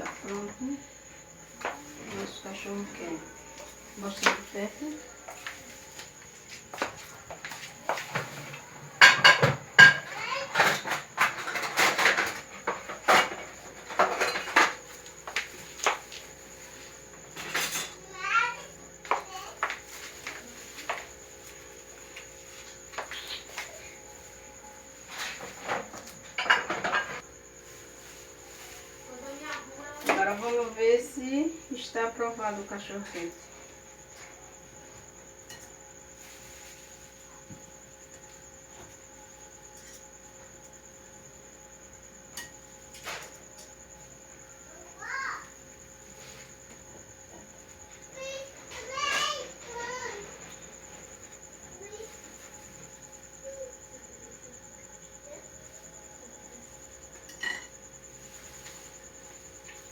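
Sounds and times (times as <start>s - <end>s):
utensils clinking against dishes: 7.9s - 16.2s, 17.3s - 18.0s, 25.0s - 27.2s, 57.1s - 57.8s.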